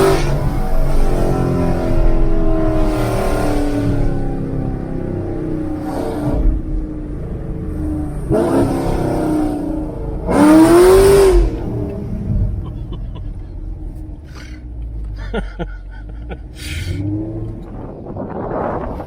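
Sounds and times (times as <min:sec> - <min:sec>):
car engine exhaust accelerating: 0:00.0 - 0:19.0.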